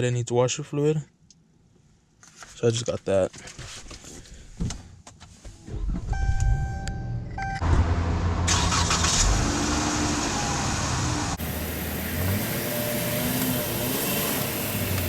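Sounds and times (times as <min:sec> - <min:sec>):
car engine cranking and starting: 0:05.8 - 0:15.0.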